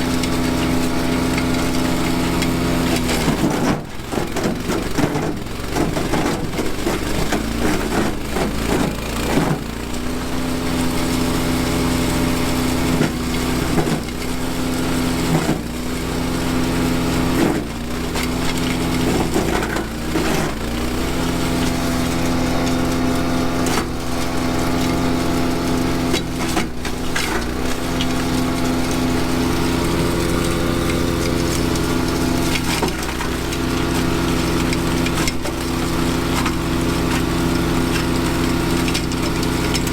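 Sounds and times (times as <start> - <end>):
wood chipper engine running: 0.0 - 39.9
wood crackling and splintering: 0.0 - 39.9.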